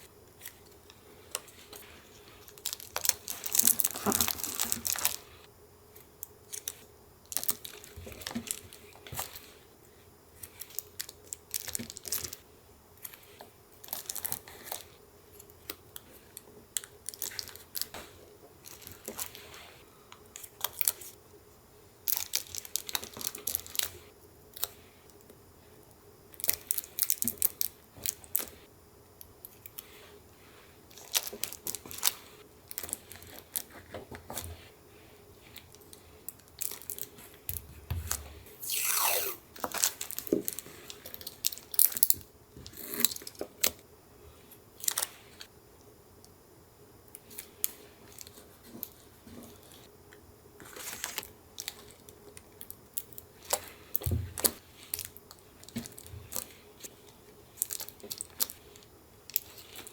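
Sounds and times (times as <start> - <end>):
paper crinkling and tearing: 1.5 - 5.3
long paper tear: 38.5 - 39.5.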